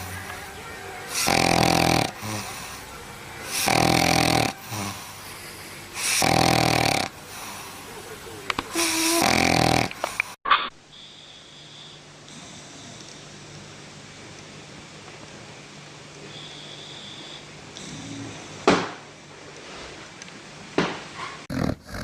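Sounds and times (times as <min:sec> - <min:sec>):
dog snoring: 0:01.1 - 0:02.8, 0:03.5 - 0:07.8, 0:08.7 - 0:10.2, 0:16.3 - 0:18.6, 0:21.5 - 0:22.0.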